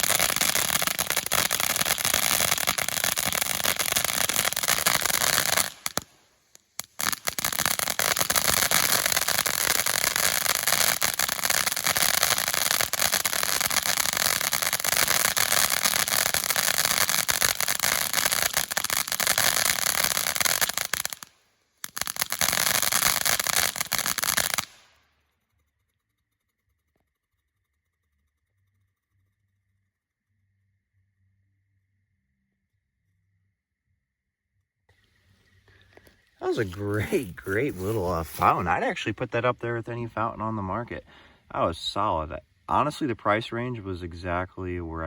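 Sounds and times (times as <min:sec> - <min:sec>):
fountain firework hissing and crackling: 0:00.0 - 0:25.0, 0:34.9 - 0:45.0.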